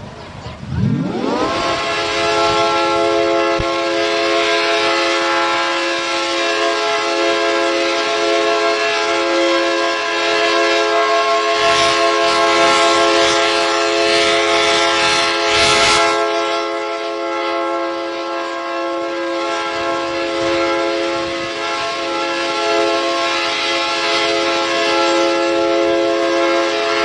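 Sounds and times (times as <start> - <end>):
rushing noise: 0.0 - 5.0
loud alarm horn chord: 0.6 - 27.0.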